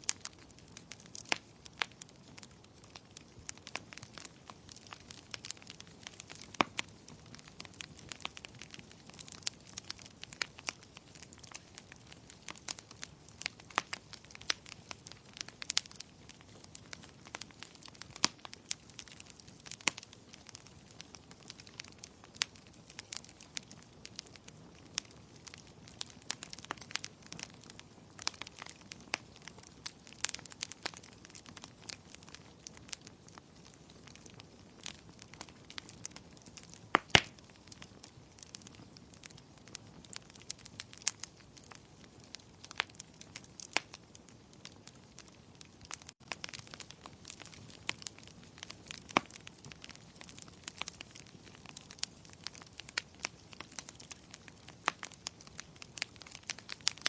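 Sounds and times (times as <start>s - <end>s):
low hiss of burning: 0.0s - 57.0s
wood fire crackling: 0.0s - 57.0s.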